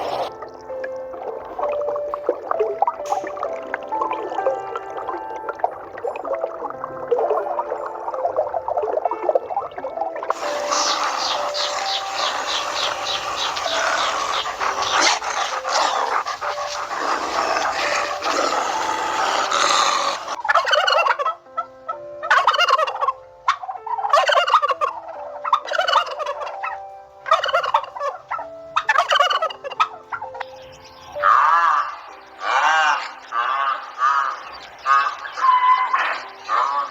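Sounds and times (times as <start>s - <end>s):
chorus of animal calls: 0.0s - 0.3s, 10.3s - 21.4s, 31.0s - 36.9s
rattling warbling calls: 0.0s - 0.3s, 10.3s - 21.2s, 27.3s - 36.9s.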